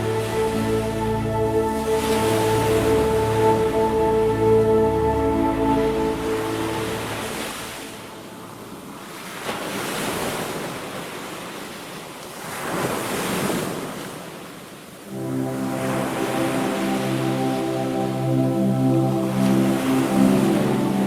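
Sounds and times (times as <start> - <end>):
ocean waves washing on shore: 0.0 - 21.0
soft held music notes: 15.1 - 21.0.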